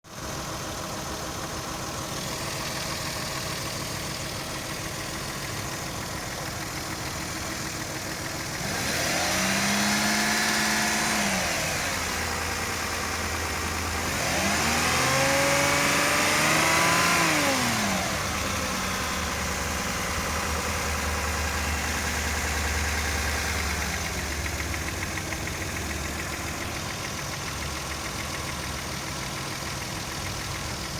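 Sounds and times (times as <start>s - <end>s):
car engine idling and revving: 0.1s - 30.9s
engine knock: 0.1s - 30.9s.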